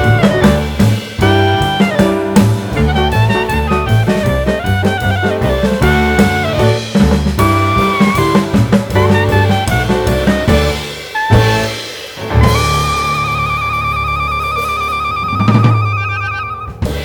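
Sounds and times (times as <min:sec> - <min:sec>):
upbeat jazzy instrumental music: 0:00.0 - 0:17.0.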